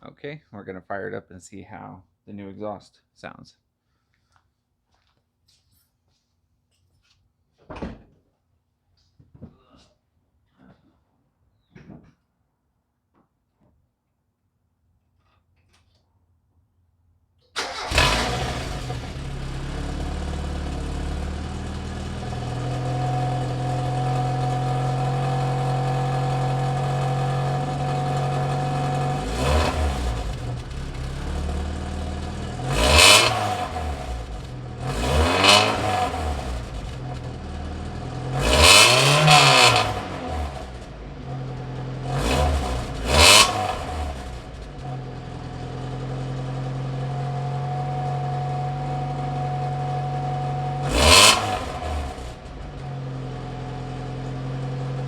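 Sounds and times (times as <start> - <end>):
car engine starting and idling: 17.6 - 55.0
engine throttle blips: 17.6 - 55.0.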